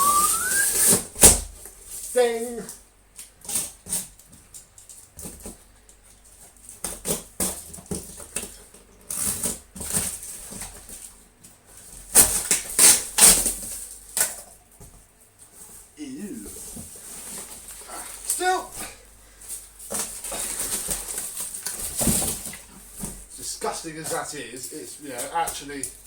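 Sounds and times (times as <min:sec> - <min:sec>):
packing material rustling: 0:19.4 - 0:22.7.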